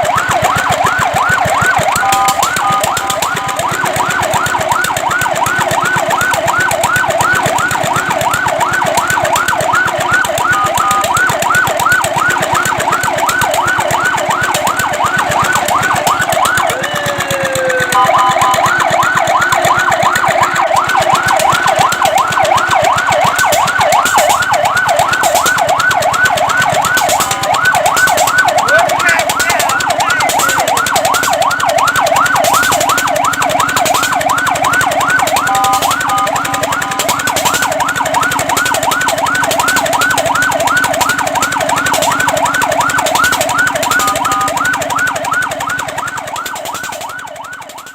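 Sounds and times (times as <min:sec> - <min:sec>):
fire truck siren yelping: 0:00.0 - 0:47.9.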